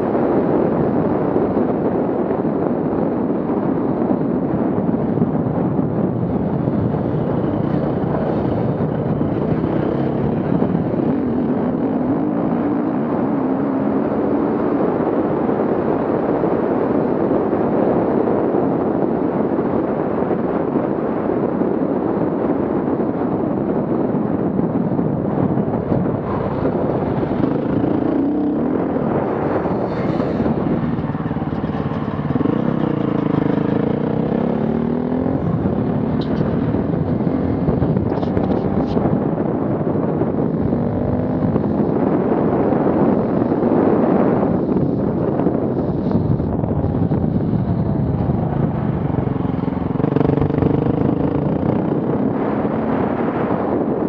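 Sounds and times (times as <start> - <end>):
steady rushing noise: 0.0 - 54.0
off-road vehicle engines running: 3.2 - 18.1, 22.1 - 54.0
engine revving: 26.0 - 39.2, 48.3 - 53.2.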